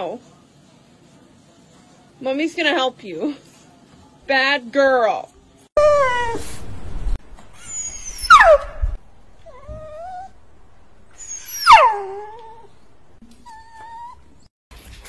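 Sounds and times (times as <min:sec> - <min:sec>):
dog crying high-pitched: 0:05.8 - 0:06.6, 0:07.5 - 0:08.8, 0:11.2 - 0:12.7
dog whining: 0:05.8 - 0:06.6, 0:07.5 - 0:10.4, 0:11.1 - 0:14.5.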